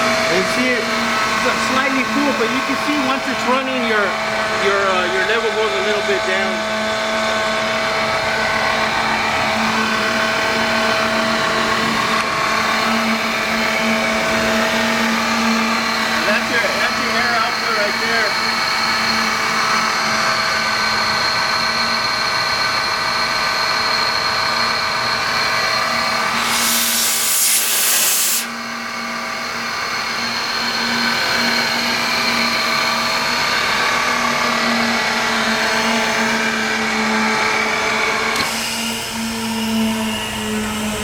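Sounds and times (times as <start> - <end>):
air compressor humming and whining: 0.0 - 41.0
loud hiss of air: 25.7 - 28.7.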